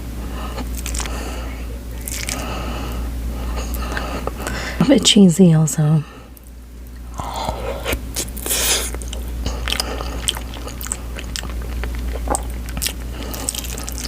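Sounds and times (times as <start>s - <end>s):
chewing food: 0.5s - 1.4s, 2.0s - 4.5s, 6.3s - 14.0s
wet mouth clicks and smacks: 8.1s - 14.0s.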